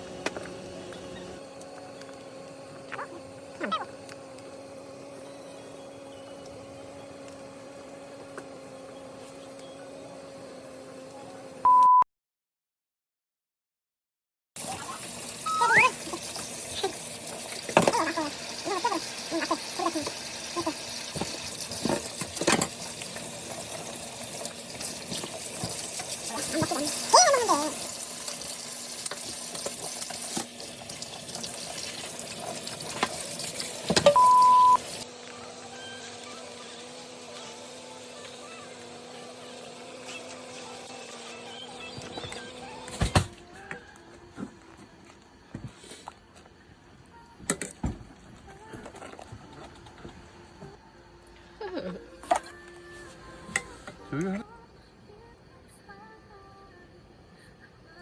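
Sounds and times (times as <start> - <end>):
water running: 14.6 - 43.2
loud electronic beep: 34.1 - 34.8.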